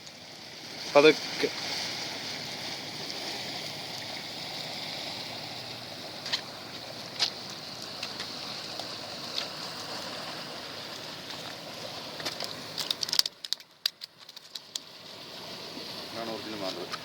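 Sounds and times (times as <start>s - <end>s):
hiss of moving water: 0.0s - 17.0s.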